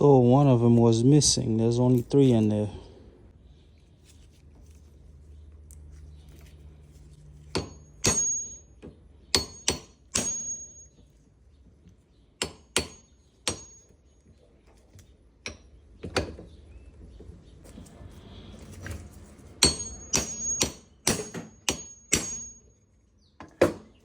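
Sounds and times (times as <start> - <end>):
hammer striking metal joint: 7.5 - 11.0, 12.4 - 13.9, 19.6 - 22.6
high metallic ring: 7.6 - 11.2, 19.6 - 20.9, 21.5 - 22.9.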